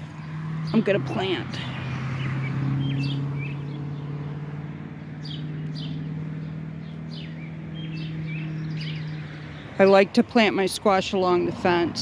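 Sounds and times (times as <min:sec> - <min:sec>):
engine hum: 0:00.0 - 0:12.0
songbirds chirping: 0:00.0 - 0:12.0.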